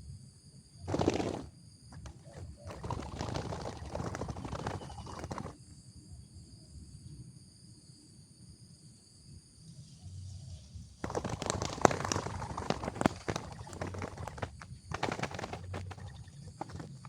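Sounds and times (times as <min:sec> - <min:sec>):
dove cooing: 0:00.9 - 0:05.6, 0:11.0 - 0:17.0
rustling crackling noise: 0:00.9 - 0:05.6, 0:11.0 - 0:17.0.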